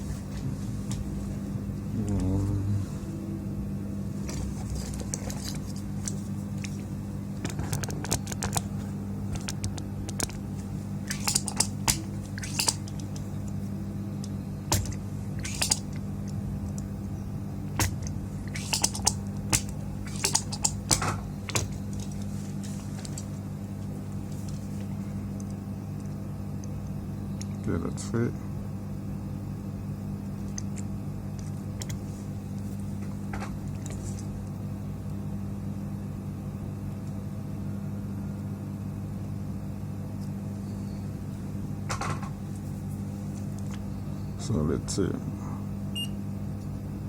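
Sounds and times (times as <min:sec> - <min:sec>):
low electrical hum: 0:00.0 - 0:47.0.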